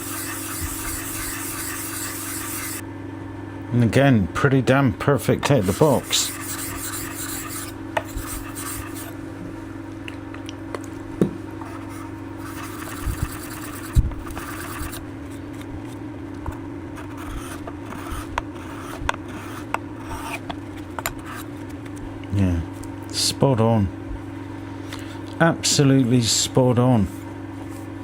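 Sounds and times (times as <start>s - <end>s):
blade scraping: 0.0s - 2.8s, 5.5s - 9.2s, 11.8s - 15.0s
steady low hum: 0.0s - 28.0s.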